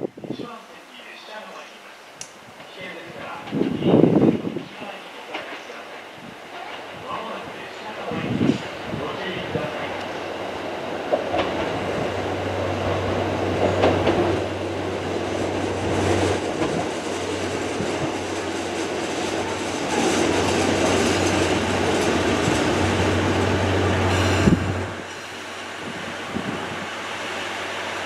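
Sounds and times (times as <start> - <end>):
train wheels on rails: 5.2 - 28.0
diesel engine hum: 20.0 - 28.0.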